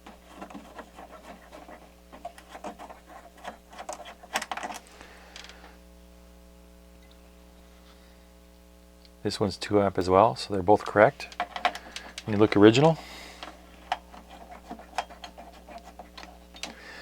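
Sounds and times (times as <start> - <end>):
faint steady hum: 0.0 - 17.0
hands handling small parts: 1.6 - 5.6, 11.2 - 16.8.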